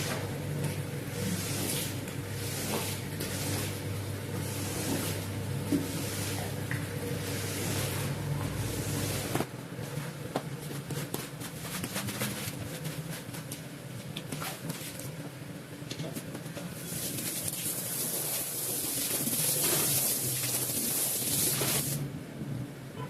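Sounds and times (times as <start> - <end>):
low machine hum: 0.0 - 17.6
water spraying hiss: 16.9 - 22.0.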